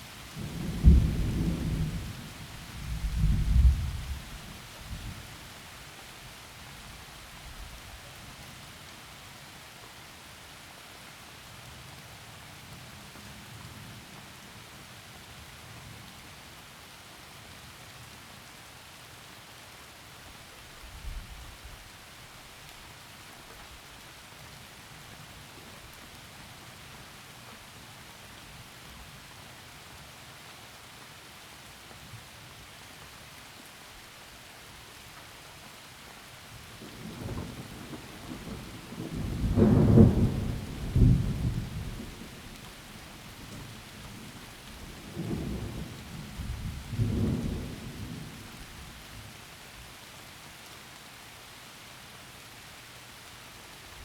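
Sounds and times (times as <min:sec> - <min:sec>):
heavy rain through trees: 0:00.0 - 0:54.0
distant thunder rumbling: 0:00.4 - 0:02.2, 0:36.9 - 0:42.6, 0:43.4 - 0:48.5.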